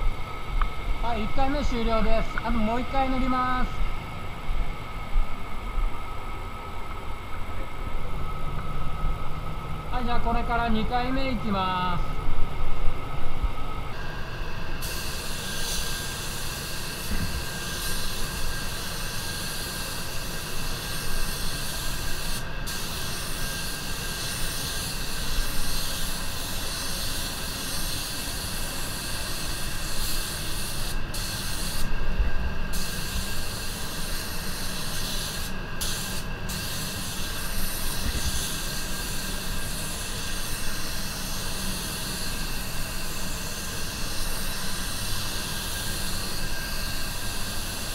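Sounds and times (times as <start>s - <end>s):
spray gun hissing: 14.8s - 31.9s, 32.7s - 47.9s.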